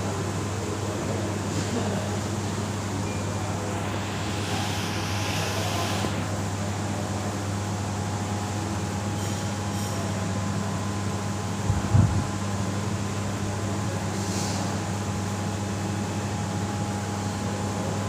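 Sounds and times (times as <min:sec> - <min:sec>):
air conditioner fan rushing: 0:00.0 - 0:18.0
brief bright hiss: 0:03.2 - 0:06.9.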